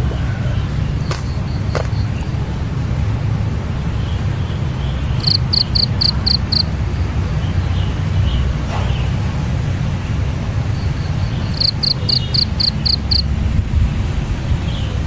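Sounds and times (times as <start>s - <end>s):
songbird chirping: 0.0s - 2.9s, 3.8s - 9.1s, 10.1s - 13.4s
low outdoor rumble: 0.0s - 15.0s.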